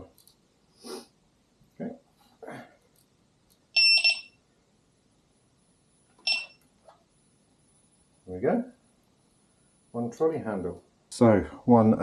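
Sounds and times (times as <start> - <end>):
electronic beeps: 6.2 - 6.6.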